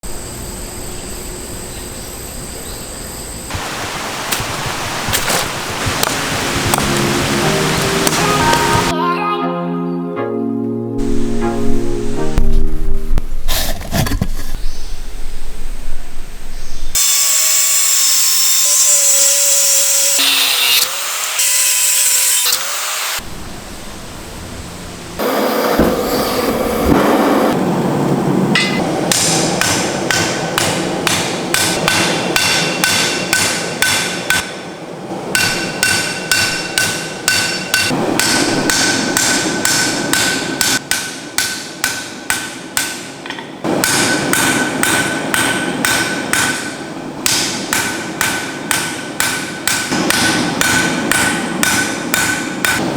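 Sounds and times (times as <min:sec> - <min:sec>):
hammer blows on anvil: 0:28.6 - 0:34.6, 0:35.3 - 0:52.9.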